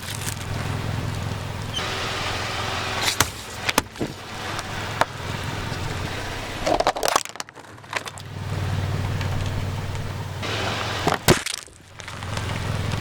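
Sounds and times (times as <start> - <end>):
car engine humming: 0.0 - 13.0
sharp cracks and snaps: 6.6 - 8.3, 11.1 - 13.0.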